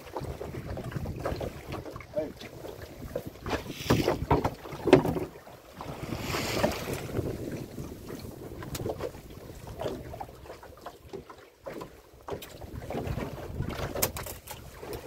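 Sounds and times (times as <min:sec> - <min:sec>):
knocks and thumps on boat: 0:00.0 - 0:15.0
wind buffeting microphone: 0:00.2 - 0:04.6, 0:05.8 - 0:10.5.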